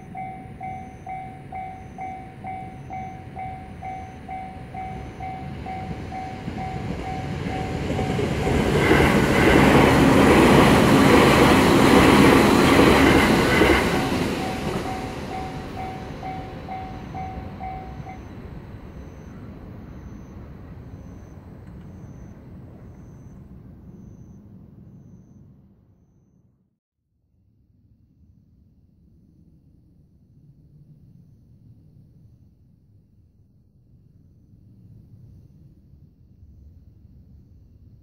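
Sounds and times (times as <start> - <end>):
crossing bell dinging rapidly: 0.0 - 19.4
train passing: 0.0 - 25.4.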